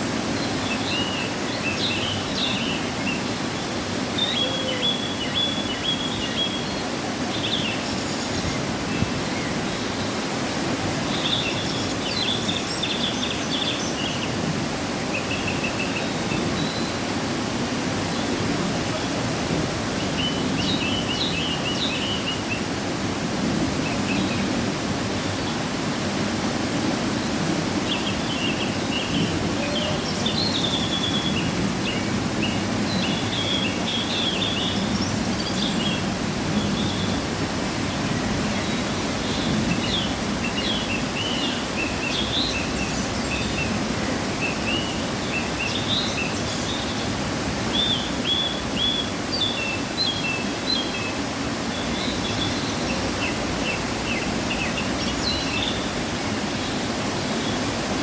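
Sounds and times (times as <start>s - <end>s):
waterfall rushing: 0.0s - 58.0s
small birds chirping: 27.2s - 37.2s, 37.8s - 58.0s.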